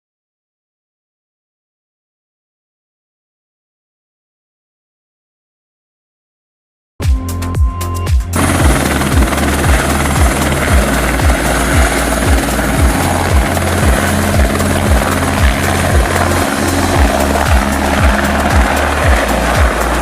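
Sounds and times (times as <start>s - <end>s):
rotor blades thudding: 8.4s - 19.8s
helicopter rotor and engine: 8.4s - 20.0s.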